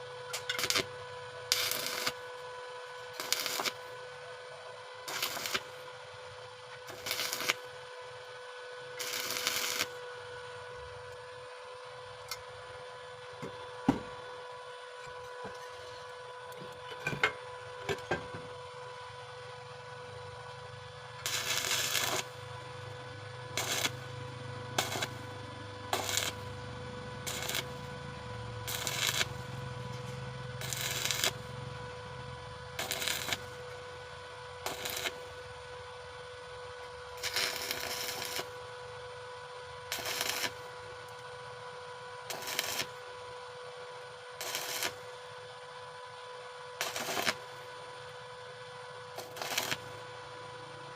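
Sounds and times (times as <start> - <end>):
welding arc crackling: 0.0 - 4.0, 5.0 - 5.9, 6.8 - 7.8, 9.0 - 10.0, 20.6 - 35.6, 37.2 - 38.8, 39.9 - 40.8, 42.3 - 43.0, 44.3 - 45.2, 46.8 - 47.7, 49.1 - 50.1
electrical hum: 0.0 - 50.9.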